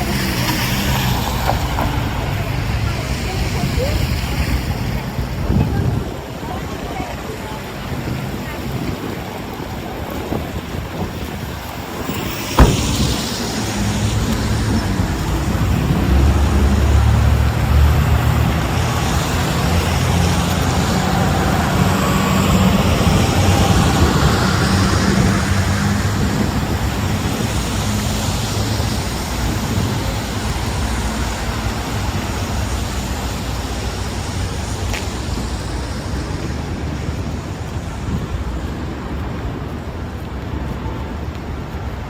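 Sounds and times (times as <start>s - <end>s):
street traffic: 0.0s - 42.0s
vehicle engine droning: 12.0s - 38.0s
sharp knock: 12.6s - 13.2s.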